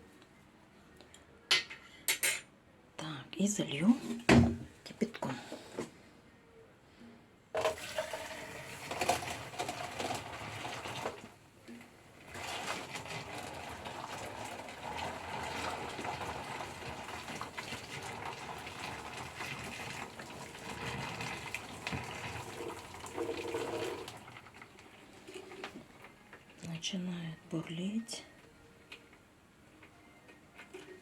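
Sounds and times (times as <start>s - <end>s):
water gushing into washing machine: 7.6s - 26.2s.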